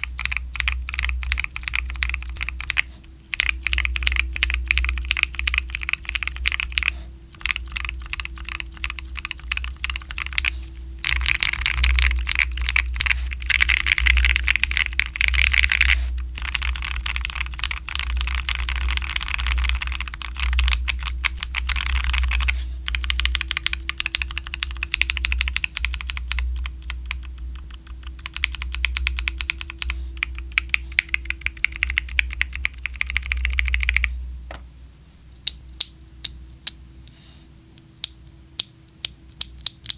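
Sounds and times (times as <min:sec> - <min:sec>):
mechanical keyboard typing: 0:00.0 - 0:34.1.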